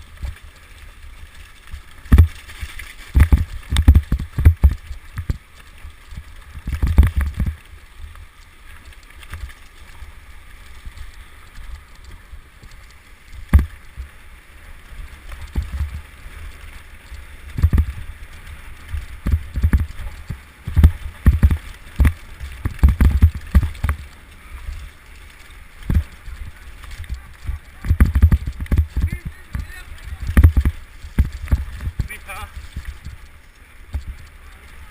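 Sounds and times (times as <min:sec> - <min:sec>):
wind rumble on microphone: 0:01.7 - 0:08.4, 0:14.8 - 0:25.0, 0:25.7 - 0:34.9
bike jolting over rough ground: 0:15.1 - 0:34.9.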